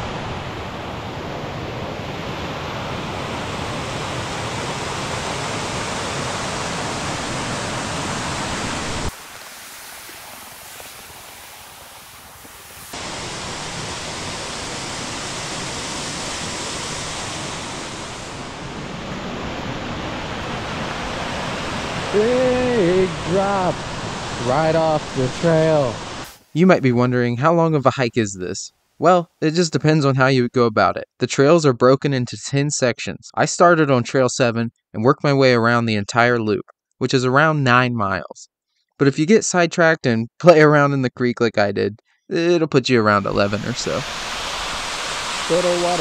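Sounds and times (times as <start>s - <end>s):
waterfall rushing: 2.4s - 26.4s, 43.2s - 46.0s.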